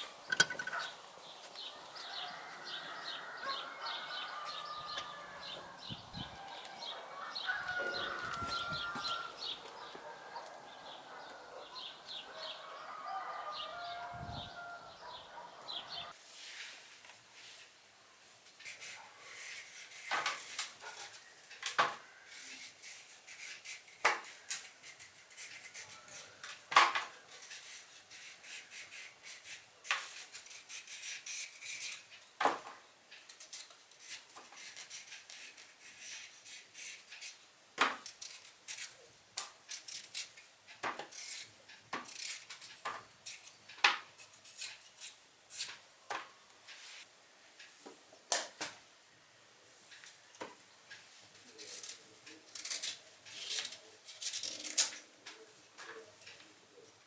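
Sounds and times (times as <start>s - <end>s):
dishes and utensils clinking: 0.3s - 1.0s.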